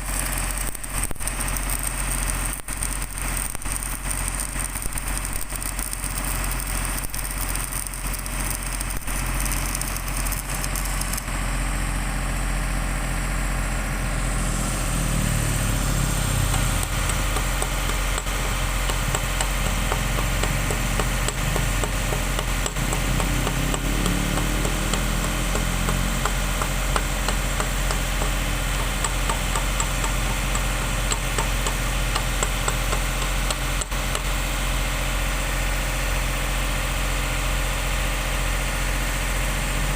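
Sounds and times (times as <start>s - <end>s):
welding arc crackle: 0.0s - 11.5s, 14.7s - 34.8s
low machine hum: 0.0s - 37.4s.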